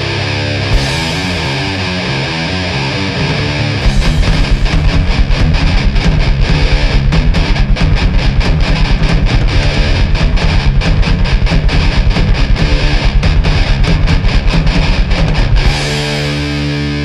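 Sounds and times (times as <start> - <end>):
bass guitar: 0.0 - 17.0
distorted electric guitar: 0.0 - 17.0
fast drum hits: 3.8 - 16.3.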